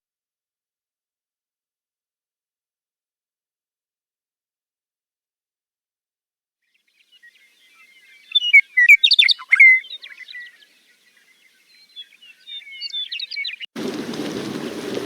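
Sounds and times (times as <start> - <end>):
birds chirping and trilling: 6.7 - 13.7.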